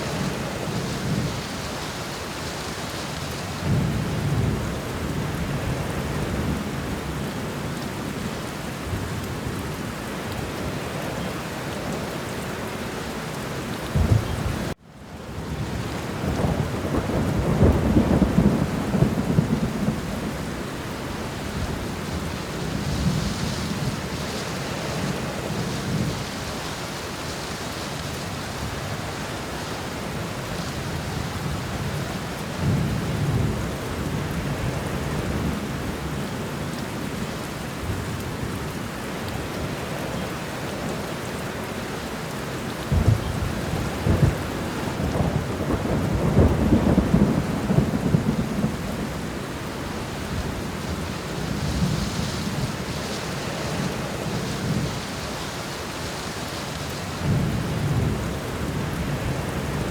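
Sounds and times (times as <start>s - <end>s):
steady rain: 0.0s - 59.9s
thunder rumbling: 13.9s - 14.8s, 15.4s - 26.4s, 42.9s - 55.3s.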